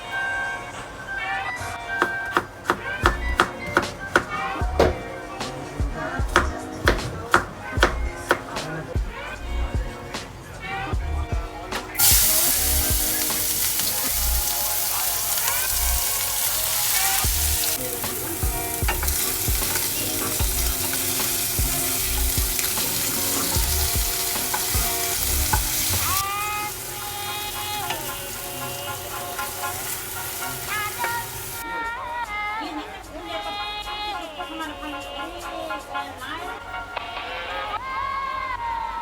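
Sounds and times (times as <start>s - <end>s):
background music: 0.0s - 39.0s
food sizzling in a pan: 12.0s - 31.6s.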